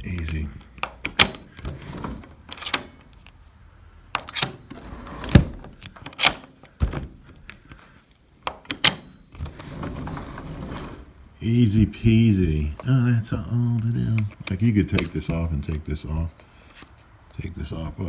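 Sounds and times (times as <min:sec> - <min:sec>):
door latch clicking and knocking: 0:00.2 - 0:03.4, 0:04.1 - 0:07.6, 0:08.4 - 0:11.1, 0:13.7 - 0:15.8.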